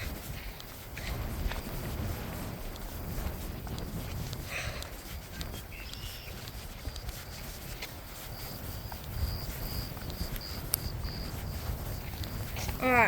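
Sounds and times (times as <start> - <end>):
footstep-like clicks: 0.0 - 12.8
wind rumbling on microphone: 0.0 - 13.0.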